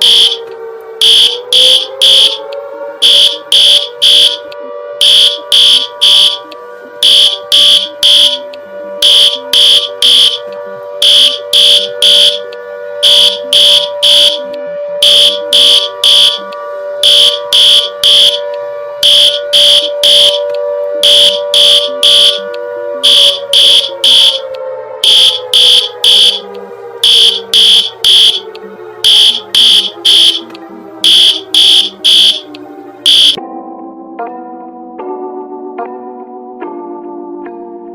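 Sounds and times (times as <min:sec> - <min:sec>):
high shrill alarm beeps: 0:00.0 - 0:00.4, 0:01.0 - 0:02.4, 0:03.0 - 0:04.4, 0:05.0 - 0:06.4, 0:07.0 - 0:08.4, 0:09.0 - 0:10.4, 0:11.0 - 0:12.4, 0:13.0 - 0:16.4, 0:17.0 - 0:18.4, 0:19.0 - 0:24.4, 0:25.0 - 0:26.4, 0:27.0 - 0:32.5, 0:33.1 - 0:33.4
low droning alarm tone: 0:00.0 - 0:33.4.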